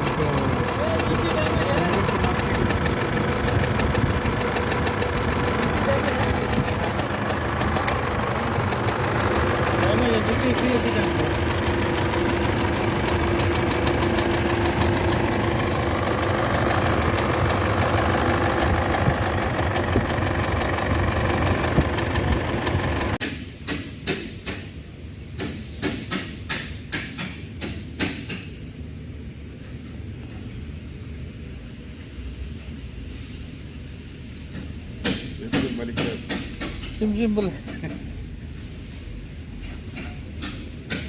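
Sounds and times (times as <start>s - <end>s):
diesel engine idling with knock: 0.0s - 23.2s, 34.5s - 38.1s
sharp clicks: 0.0s - 23.2s.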